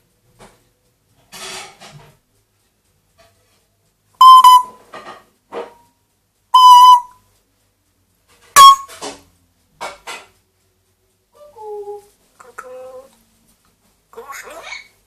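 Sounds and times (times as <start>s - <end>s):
parrot whistling: 6.6s - 7.1s
parrot squawks and chirps: 8.6s - 8.9s, 14.1s - 15.0s.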